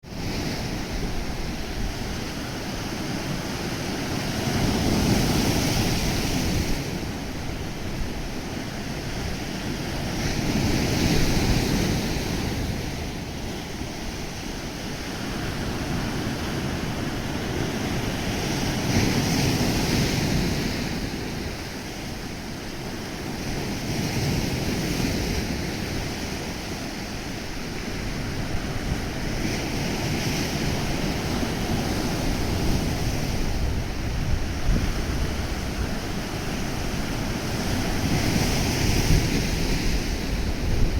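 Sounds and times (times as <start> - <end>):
waves breaking on shore: 0.0 - 40.9.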